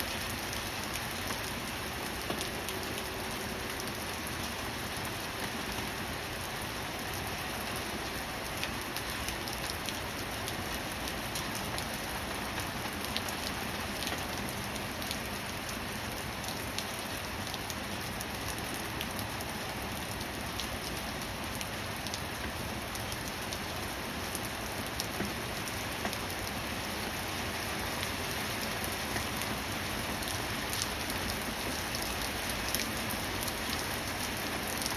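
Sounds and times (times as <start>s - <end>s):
raindrops ticking on a surface: 0.0s - 34.9s
steady rain hiss: 0.0s - 34.9s.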